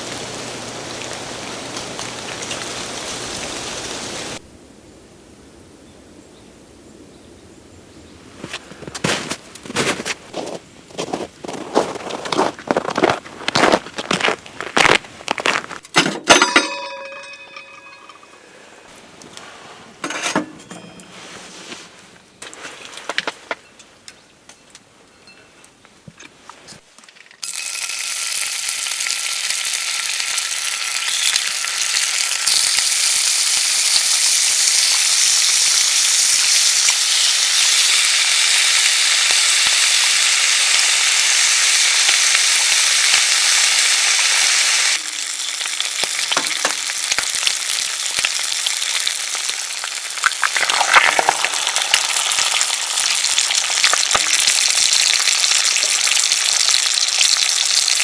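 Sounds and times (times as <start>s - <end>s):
food sizzling in a hot pan: 0.0s - 4.4s, 27.4s - 58.0s.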